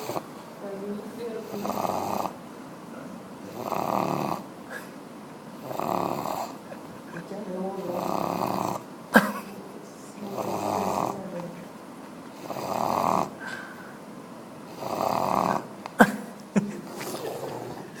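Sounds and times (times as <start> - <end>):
person snoring: 0.0 - 0.3, 1.5 - 2.4, 3.4 - 4.9, 5.6 - 8.9, 10.2 - 11.4, 12.4 - 13.9, 14.7 - 16.1, 16.8 - 18.0.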